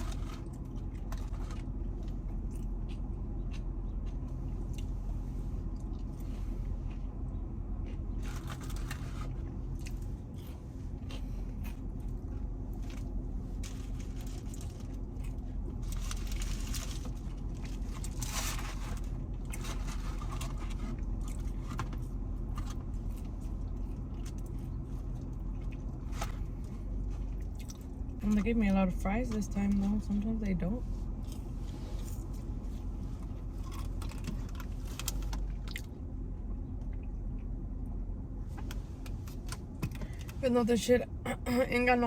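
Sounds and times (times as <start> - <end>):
chewing: 0.0 - 5.0, 22.5 - 28.2, 33.2 - 35.9
steady low hum: 0.0 - 42.0.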